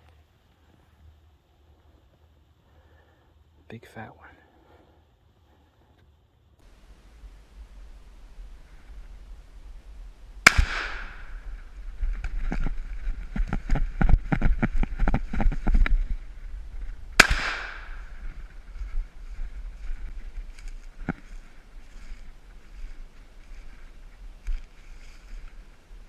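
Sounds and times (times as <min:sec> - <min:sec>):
rapid quiet knocks and crackles: 0:06.6 - 0:16.2
shotgun shots with echo: 0:10.4 - 0:11.4, 0:17.2 - 0:18.1.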